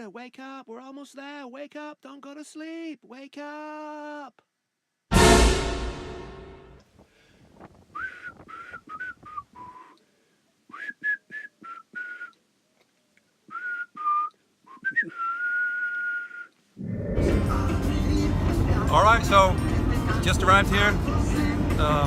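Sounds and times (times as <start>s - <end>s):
person whistling: 8.0s - 10.0s, 10.7s - 12.4s, 13.5s - 16.6s.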